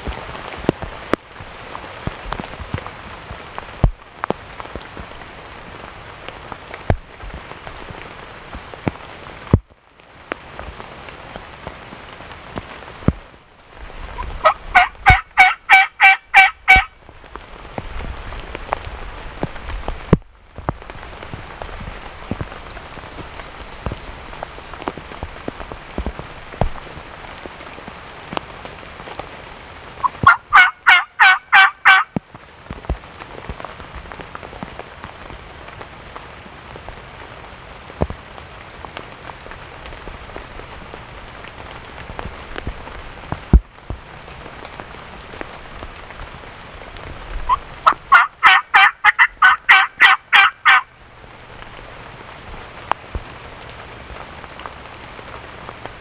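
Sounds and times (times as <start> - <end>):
rain pattering: 0.0 - 56.0
rapid turkey yelps: 14.1 - 17.0, 30.0 - 32.1, 47.5 - 50.9.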